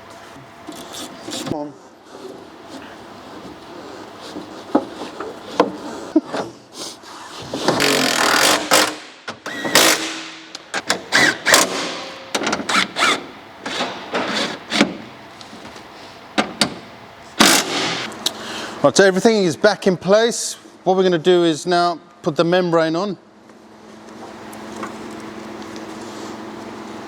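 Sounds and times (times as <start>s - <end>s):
hand tools working: 7.4s - 10.1s.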